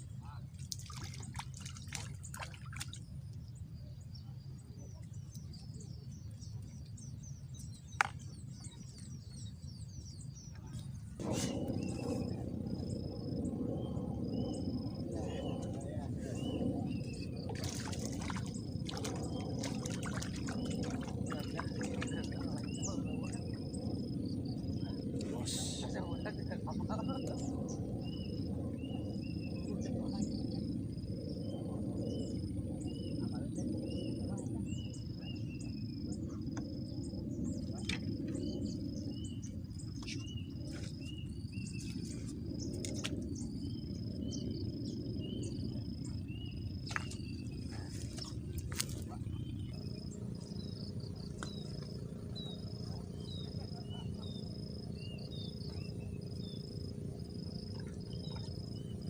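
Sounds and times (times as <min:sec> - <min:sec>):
steady low water rush: 0:00.0 - 0:03.7, 0:10.6 - 0:34.1
steady low rumble: 0:00.0 - 0:59.0.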